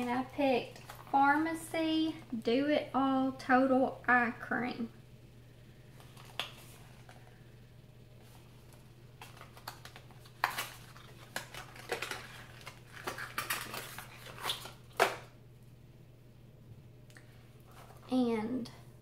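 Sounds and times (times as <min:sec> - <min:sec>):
packaging clicks taps and rustles: 0:00.0 - 0:01.2, 0:08.7 - 0:15.3.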